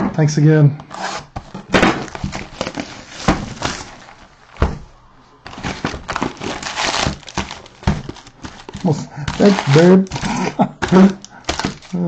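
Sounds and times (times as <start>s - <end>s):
packaging tearing and crackling: 2.0s - 4.3s, 5.5s - 12.0s.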